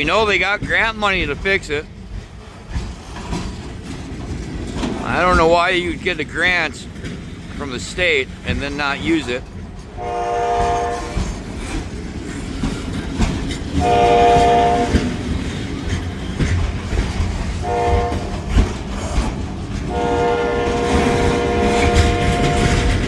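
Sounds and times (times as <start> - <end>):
train rumbling past: 0.0 - 23.0
locomotive horn blasts: 10.0 - 11.2, 13.8 - 15.1, 17.6 - 18.3, 19.9 - 23.0.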